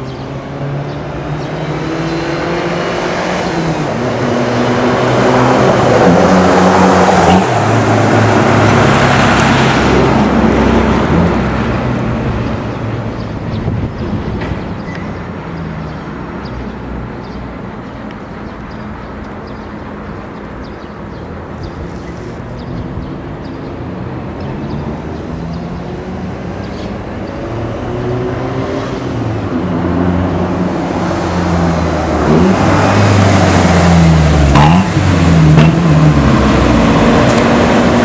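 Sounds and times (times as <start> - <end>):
truck engine under throttle: 0.0 - 14.4, 29.2 - 38.0.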